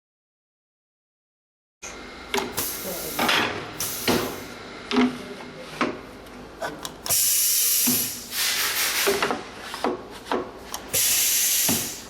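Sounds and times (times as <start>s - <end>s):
compressed air hiss: 3.8s - 4.4s, 7.1s - 9.2s, 10.9s - 12.0s.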